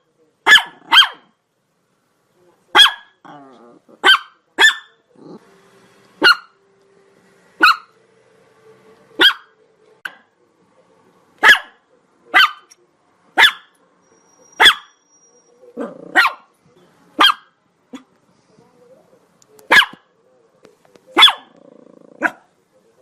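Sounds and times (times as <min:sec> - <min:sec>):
small dog yapping: 0:00.4 - 0:01.3, 0:02.7 - 0:04.9, 0:14.6 - 0:15.0, 0:15.8 - 0:16.5, 0:21.2 - 0:21.6.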